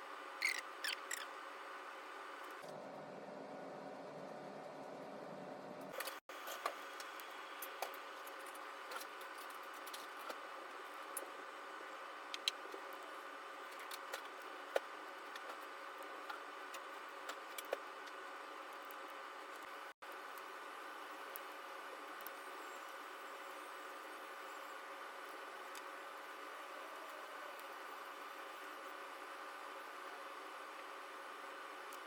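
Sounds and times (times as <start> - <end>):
background hum: 0.0 - 32.0.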